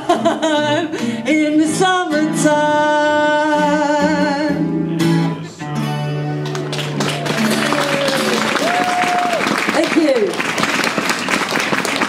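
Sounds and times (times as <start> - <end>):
person singing with vibrato: 0.0 - 4.8
acoustic guitar strumming: 0.0 - 7.7.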